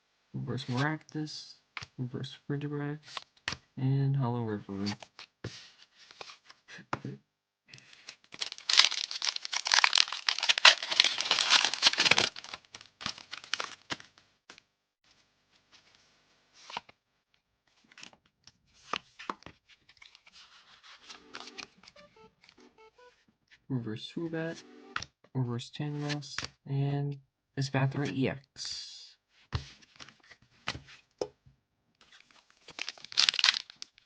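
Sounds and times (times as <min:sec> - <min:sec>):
cards and packaging rustling: 0:07.8 - 0:14.1, 0:17.7 - 0:23.2, 0:25.9 - 0:26.5, 0:32.0 - 0:34.0
foil wrapper tearing and crinkling: 0:08.3 - 0:14.0, 0:32.3 - 0:34.0.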